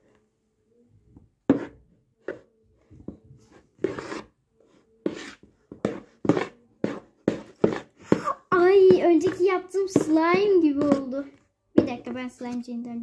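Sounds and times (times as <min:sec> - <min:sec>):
slime scraping and rubbing: 0:03.4 - 0:11.2.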